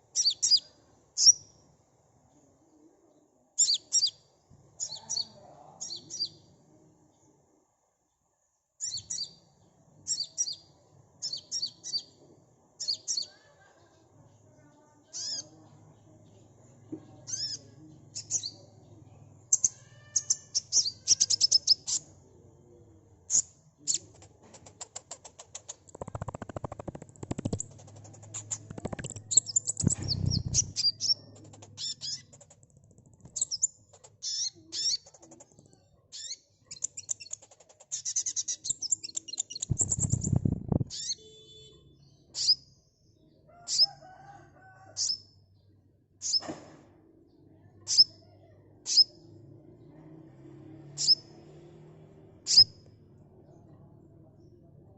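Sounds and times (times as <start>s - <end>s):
sunbird chirps and trills: 0.1s - 1.5s, 15.1s - 15.6s, 17.3s - 22.1s, 25.5s - 32.6s, 36.1s - 43.9s.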